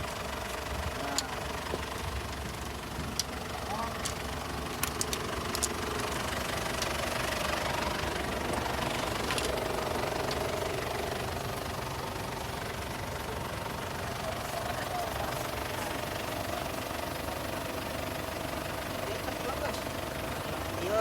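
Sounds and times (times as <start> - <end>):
diesel engine idling: 0.0 - 21.0
sharp clicks: 4.0 - 7.0.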